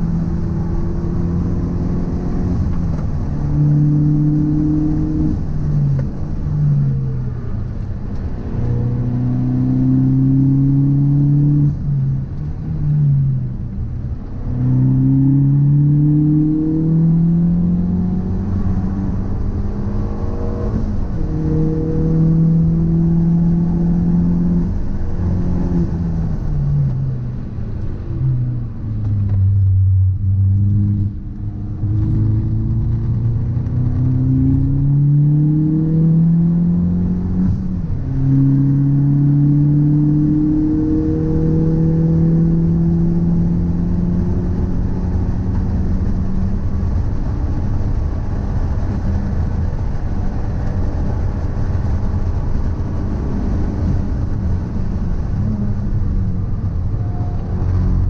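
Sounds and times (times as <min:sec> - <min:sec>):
car engine accelerating: 0:00.0 - 0:58.0
low road rumble: 0:00.0 - 0:58.0
gear change: 0:26.2 - 0:35.1.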